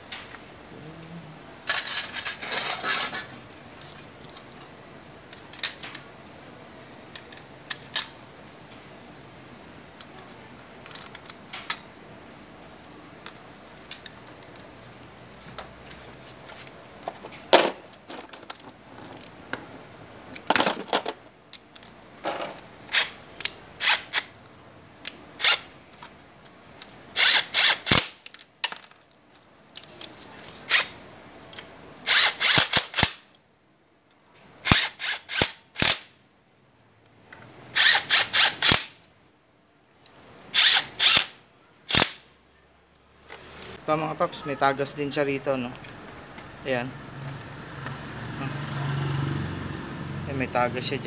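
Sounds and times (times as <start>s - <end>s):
power tool driving bolts: 23.8s - 24.3s, 27.2s - 28.3s, 32.1s - 33.2s, 34.6s - 36.1s, 37.8s - 39.0s, 40.6s - 42.2s.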